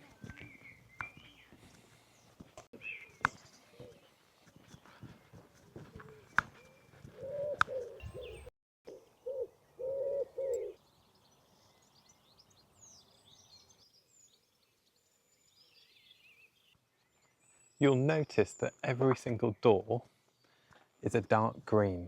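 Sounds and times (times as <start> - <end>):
songbirds chirping: 0.0 - 22.0
pigeon cooing: 7.1 - 10.8.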